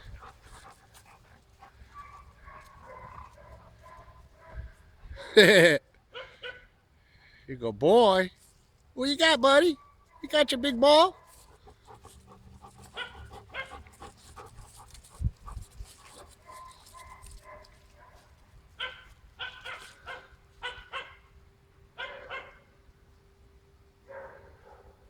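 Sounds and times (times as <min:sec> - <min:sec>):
dogs barking and yipping: 0:00.0 - 0:04.6, 0:11.2 - 0:15.0, 0:15.9 - 0:21.2, 0:22.0 - 0:22.6.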